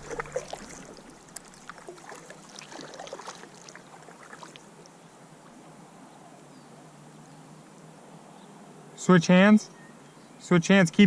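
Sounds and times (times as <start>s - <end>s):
small splashes and clicks: 0.0s - 5.0s
water splashing and lapping: 0.0s - 5.7s.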